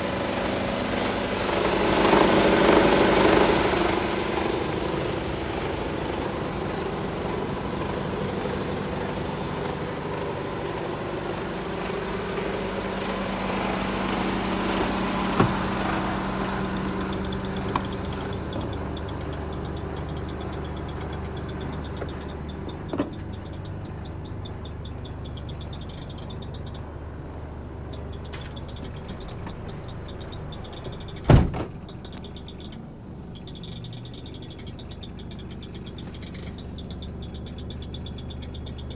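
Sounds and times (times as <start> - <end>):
diesel engine idling: 0.0 - 38.9
thin high whine: 0.3 - 23.0.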